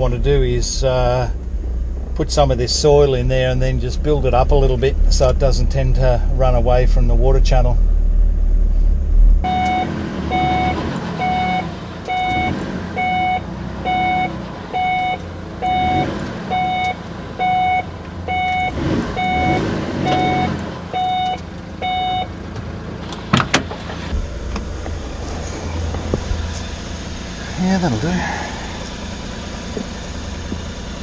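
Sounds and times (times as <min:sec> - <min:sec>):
truck engine running: 0:09.4 - 0:24.2
truck reversing beeper: 0:09.5 - 0:24.2.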